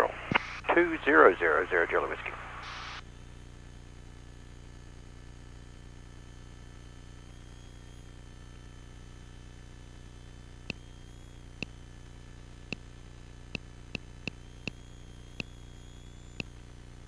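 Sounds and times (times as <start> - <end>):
jet cockpit hum: 0.0 - 3.0, 9.3 - 16.7.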